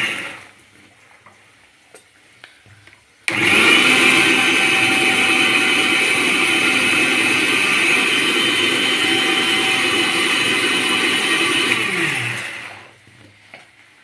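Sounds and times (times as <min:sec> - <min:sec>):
electric mixer grinder running: 0:00.0 - 0:00.5, 0:03.3 - 0:13.0
motor winding down: 0:03.3 - 0:12.9.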